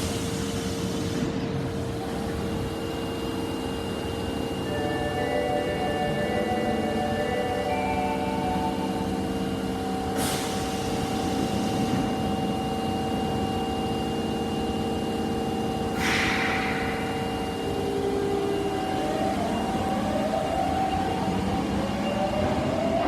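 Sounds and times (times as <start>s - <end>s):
subway train humming: 0.0s - 23.0s
train motor rising whine: 2.1s - 23.0s
air brakes hissing: 10.1s - 12.1s, 15.9s - 18.3s.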